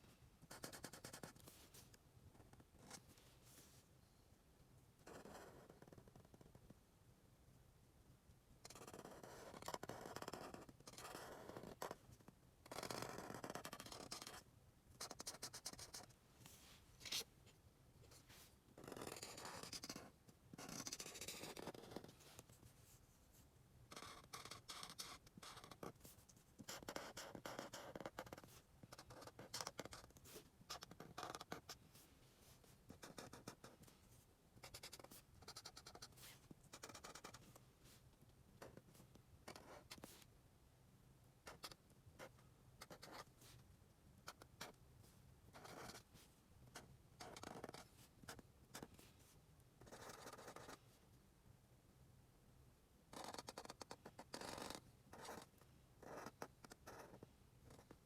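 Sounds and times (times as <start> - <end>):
drawing tool scratching on paper: 53.2 - 57.9.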